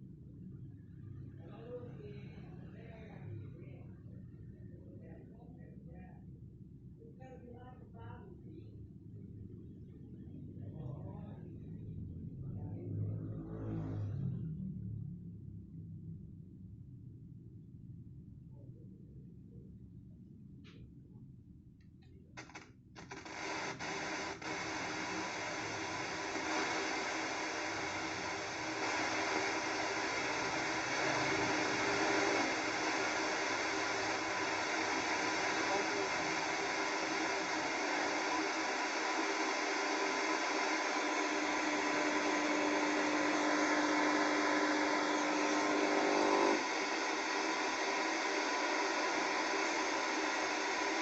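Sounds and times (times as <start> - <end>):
radio static hiss: 22.4 - 51.0.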